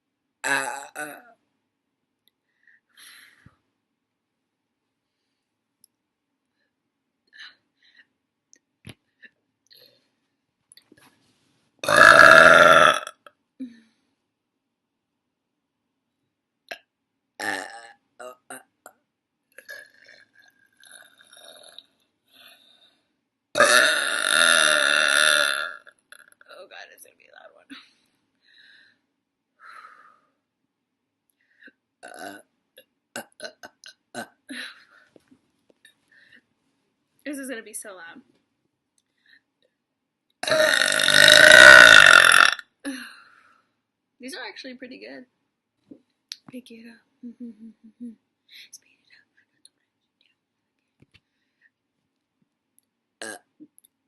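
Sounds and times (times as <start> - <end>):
woman burping loudly: 0.4 - 1.4, 11.8 - 13.8, 17.4 - 18.7, 19.6 - 21.8, 23.6 - 26.3, 32.0 - 32.5, 33.2 - 34.7, 40.4 - 43.2, 53.2 - 53.6
breath: 2.4 - 3.6, 22.3 - 23.2, 27.8 - 30.4, 31.4 - 31.8, 36.0 - 36.5, 39.1 - 39.5, 43.0 - 43.8, 51.2 - 51.8.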